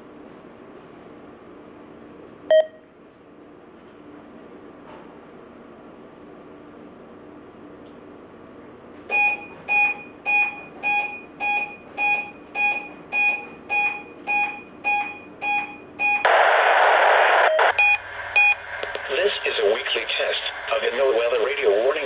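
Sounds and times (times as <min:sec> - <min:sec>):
short electronic beeps: 0:02.5 - 0:02.8, 0:09.1 - 0:18.7.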